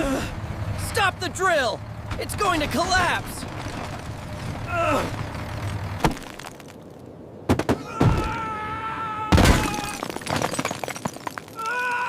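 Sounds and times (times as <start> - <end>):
thuds and crashes: 9.3 - 11.6.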